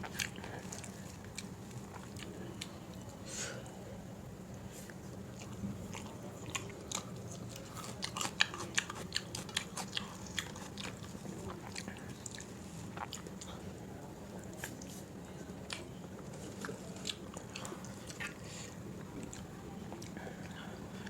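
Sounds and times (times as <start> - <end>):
person chewing food: 0.0 - 2.8, 4.8 - 13.6, 15.6 - 20.8.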